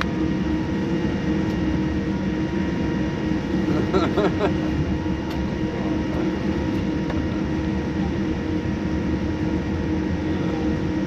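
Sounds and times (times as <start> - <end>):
airplane cabin rumble: 0.0 - 11.0.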